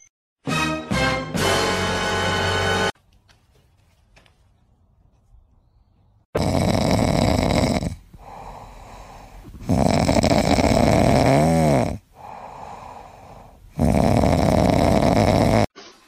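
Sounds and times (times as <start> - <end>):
pet snoring: 6.4 - 15.7
quiet breaths: 7.7 - 11.0, 12.0 - 15.6.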